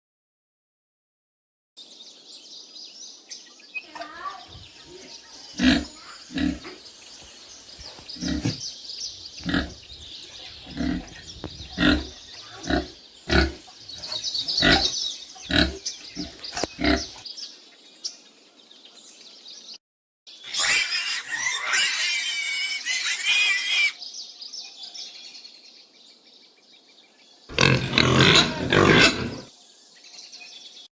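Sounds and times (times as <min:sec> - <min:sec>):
pig grunting: 0:05.5 - 0:06.8, 0:07.8 - 0:08.6, 0:09.4 - 0:17.2, 0:27.5 - 0:29.5.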